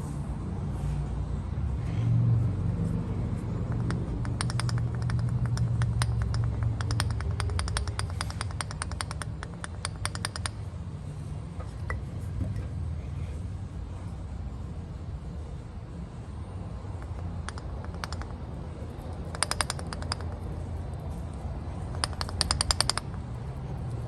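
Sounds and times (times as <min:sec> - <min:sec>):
rapid even engine ticking: 0:03.4 - 0:10.7, 0:16.8 - 0:20.9, 0:21.8 - 0:24.0.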